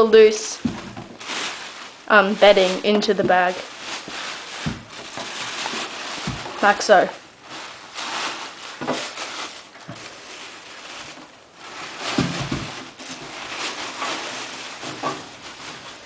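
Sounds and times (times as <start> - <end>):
cage bedding rustling: 0.0 - 16.0
plastic cage knocking: 0.6 - 1.3, 4.6 - 6.6, 12.0 - 13.0.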